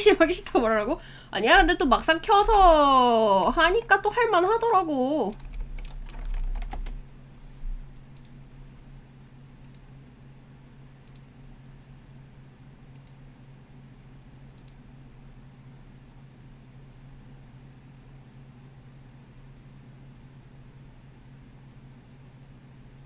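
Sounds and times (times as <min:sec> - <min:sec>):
low electrical hum: 0:00.0 - 0:23.0
computer mouse clicks: 0:05.3 - 0:07.0, 0:08.1 - 0:08.4, 0:09.6 - 0:09.9, 0:11.0 - 0:11.3, 0:12.9 - 0:13.2, 0:14.6 - 0:14.8.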